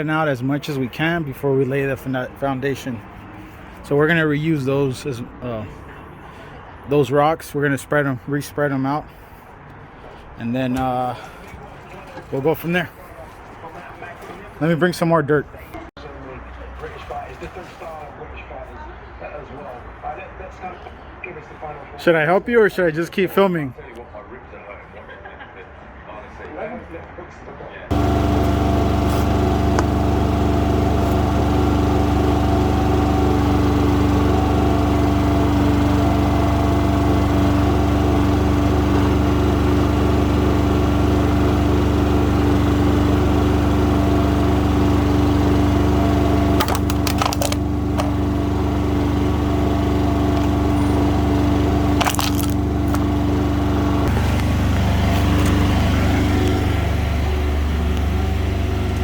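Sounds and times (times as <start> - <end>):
excavator engine running: 27.9 - 59.0.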